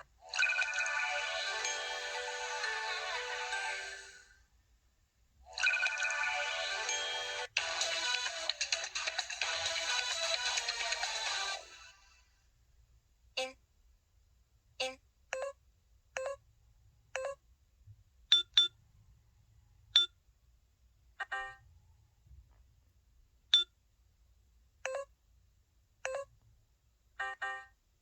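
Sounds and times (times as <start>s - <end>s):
phone alert tones: 14.8s - 15.6s, 16.2s - 16.4s, 17.2s - 17.4s, 21.2s - 21.6s, 24.8s - 25.1s, 26.0s - 26.3s, 27.2s - 27.8s.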